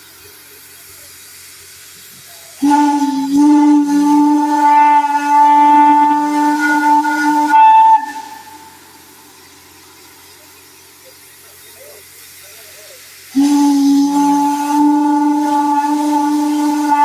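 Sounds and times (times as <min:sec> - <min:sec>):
low hiss of steam: 0:00.0 - 0:17.0
steam whistle blast: 0:02.5 - 0:09.0, 0:13.3 - 0:17.0.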